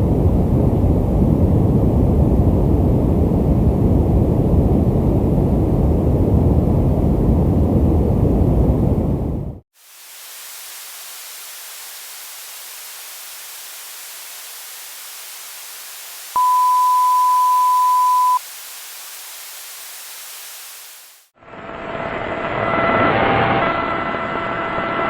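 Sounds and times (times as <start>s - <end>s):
electronic static hiss: 9.8s - 21.3s
pure tone beep: 16.4s - 18.4s.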